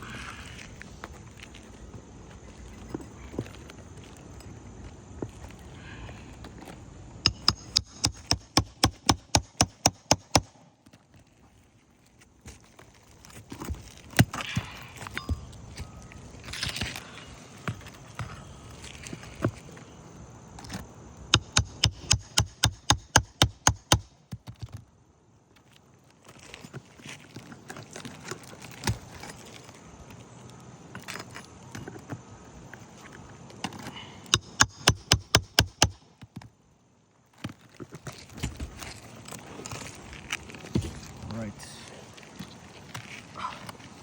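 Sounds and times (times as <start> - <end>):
rapid sharp tool taps: 7.3 - 10.5, 21.4 - 24.1, 34.3 - 36.0.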